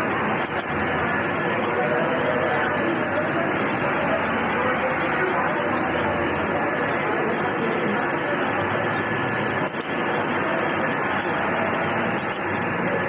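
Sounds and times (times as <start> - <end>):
industrial sewing machines running: 0.0 - 13.0.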